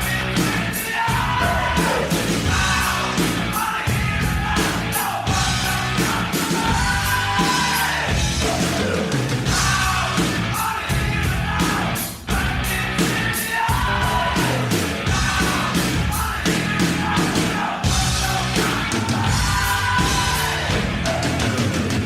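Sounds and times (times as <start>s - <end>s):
drums and guitars: 0.0s - 22.0s
rock song with shouted vocal: 0.0s - 22.0s.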